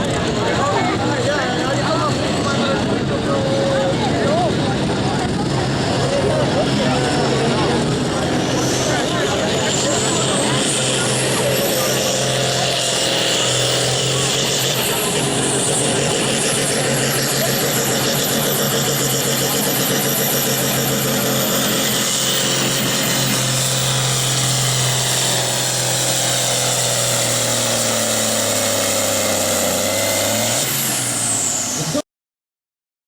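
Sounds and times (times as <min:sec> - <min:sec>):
tractor engine droning at high revs: 0:00.0 - 0:32.0.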